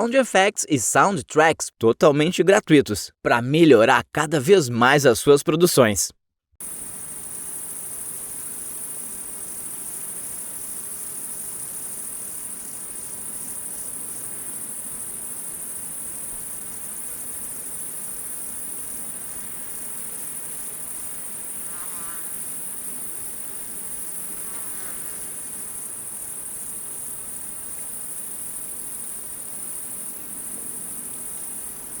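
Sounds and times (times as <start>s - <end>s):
crickets chirping: 6.6s - 32.0s.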